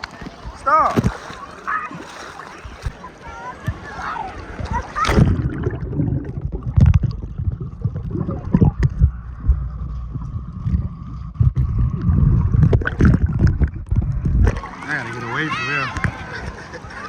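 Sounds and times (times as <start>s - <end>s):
water sloshing and splashing: 0.0s - 17.0s
wind on microphone: 4.6s - 14.6s.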